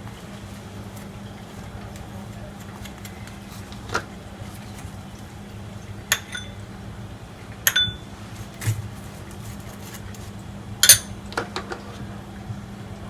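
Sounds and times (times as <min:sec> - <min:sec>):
steady low hum: 0:03.4 - 0:11.4
utensil clinking against dish: 0:06.1 - 0:06.7, 0:07.7 - 0:08.1, 0:10.8 - 0:11.7.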